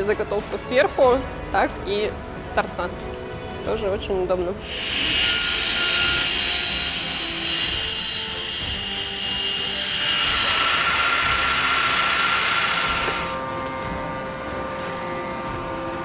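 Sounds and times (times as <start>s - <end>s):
background music: 0.0s - 16.0s
woodworking machine cutting wood: 4.6s - 13.5s.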